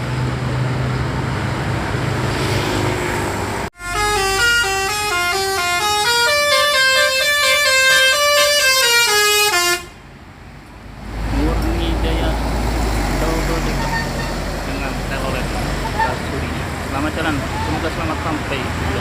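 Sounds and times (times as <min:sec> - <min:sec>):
engine rumble: 0:00.0 - 0:19.0
multi-tone bus horn tune: 0:03.7 - 0:10.0, 0:13.6 - 0:14.5.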